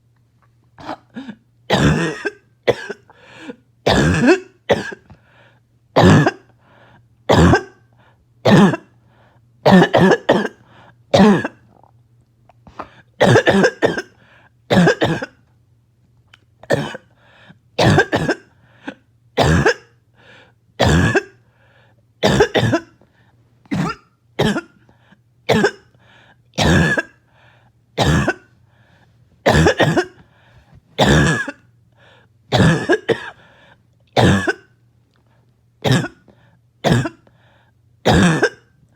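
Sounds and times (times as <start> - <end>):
person coughing harshly: 0.8 - 5.1, 6.0 - 6.5, 7.3 - 7.8, 8.4 - 9.0, 9.6 - 11.7, 12.7 - 15.4, 16.7 - 17.1, 17.8 - 20.0, 20.8 - 21.4, 22.2 - 23.0, 23.7 - 24.9, 25.5 - 25.9, 26.6 - 27.2, 28.0 - 28.5, 29.4 - 30.2, 31.0 - 31.7, 32.5 - 33.4, 34.2 - 34.7, 35.8 - 37.3, 38.0 - 38.8.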